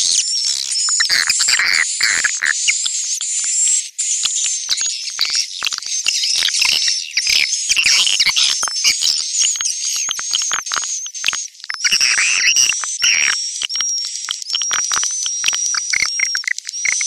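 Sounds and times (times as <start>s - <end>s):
swiftlets twittering chirps: 11.8s - 13.4s.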